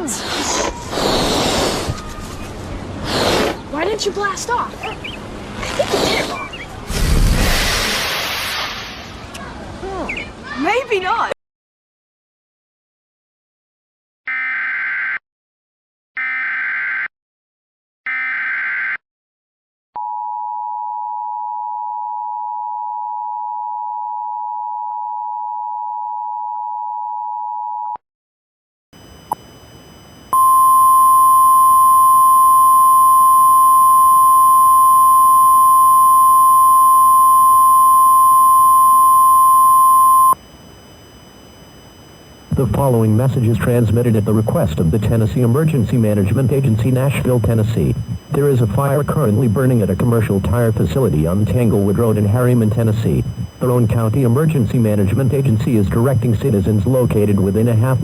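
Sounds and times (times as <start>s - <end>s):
two-tone attention signal: 29.0s - 58.0s.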